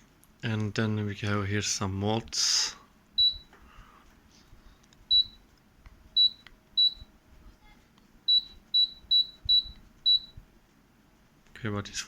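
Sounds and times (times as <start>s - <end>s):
air conditioner beeps: 3.1s - 3.8s, 5.0s - 7.3s, 8.2s - 10.7s.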